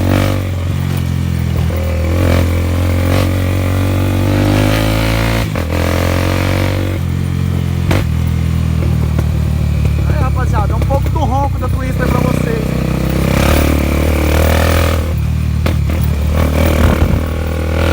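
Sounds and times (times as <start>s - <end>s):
motorcycle engine exhaust rumble: 0.0s - 17.9s
exhaust pops: 6.8s - 17.9s.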